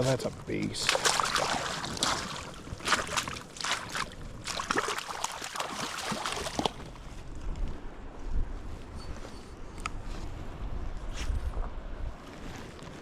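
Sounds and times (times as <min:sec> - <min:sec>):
water splashing and sloshing: 0:00.0 - 0:07.4.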